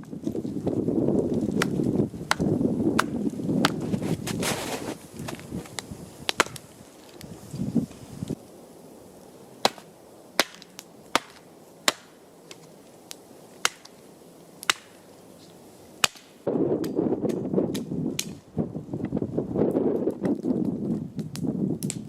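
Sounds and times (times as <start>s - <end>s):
rough crunching and rustling: 0.0s - 16.5s
wood fire crackling and popping: 0.0s - 22.0s.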